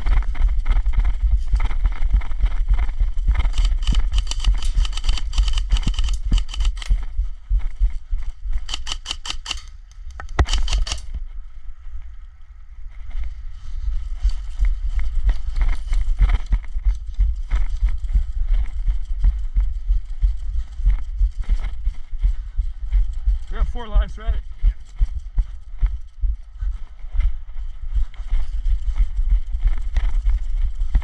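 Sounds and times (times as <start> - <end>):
dense crackling and clicking: 0.0 - 7.2
low rumble on microphone: 0.0 - 8.8, 9.6 - 31.0
rapid evenly spaced clicks: 3.4 - 6.9, 8.6 - 11.1.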